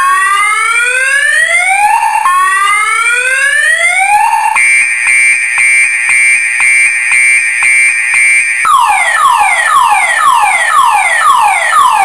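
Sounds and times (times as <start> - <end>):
car alarm siren: 0.0 - 12.0.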